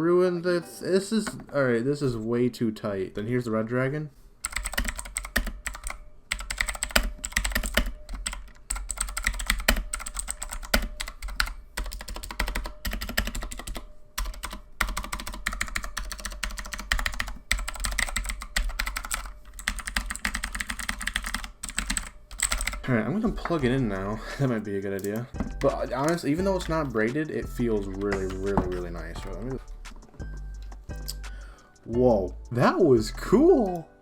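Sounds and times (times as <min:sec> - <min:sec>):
mechanical keyboard typing clicks: 0:04.4 - 0:22.8.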